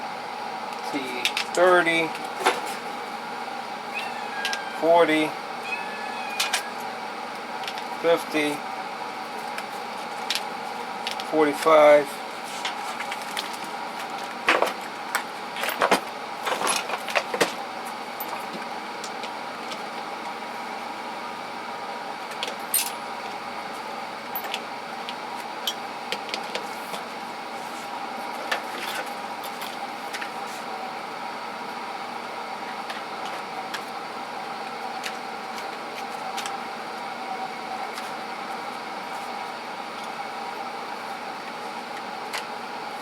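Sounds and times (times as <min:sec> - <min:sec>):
steady background hum: 0:00.0 - 0:43.0
metal tools clinking: 0:22.7 - 0:23.0.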